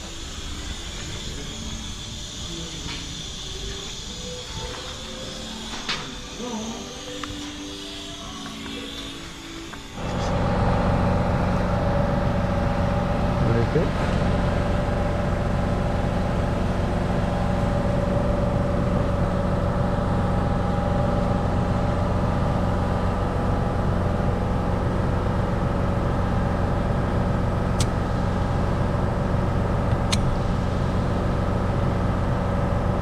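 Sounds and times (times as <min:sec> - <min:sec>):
car engine droning: 0:10.0 - 0:33.0.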